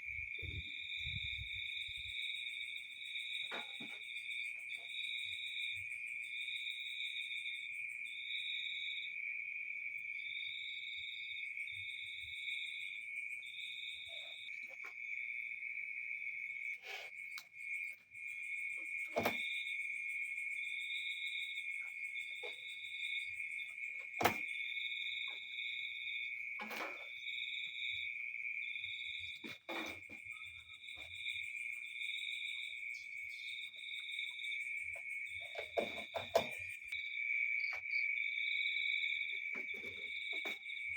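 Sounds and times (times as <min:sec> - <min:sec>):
crickets trilling: 0:00.0 - 0:40.9
higher insect chirp pulsing: 0:00.0 - 0:40.9
sharp clicks and knocks: 0:35.5 - 0:36.7.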